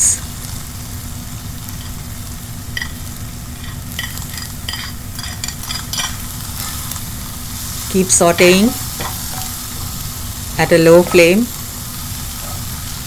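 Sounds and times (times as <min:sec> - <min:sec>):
food sizzling in a frying pan: 0:00.0 - 0:13.0.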